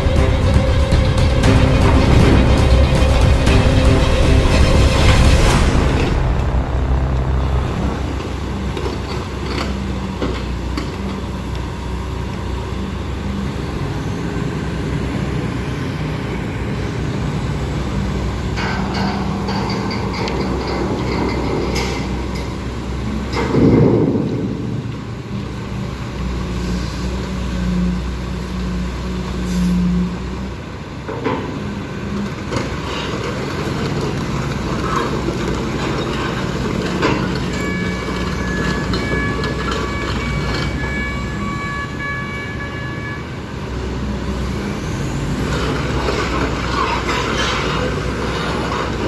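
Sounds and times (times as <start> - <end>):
high broken tone: 0.0 - 10.3
excavator diesel engine under load: 0.0 - 49.0.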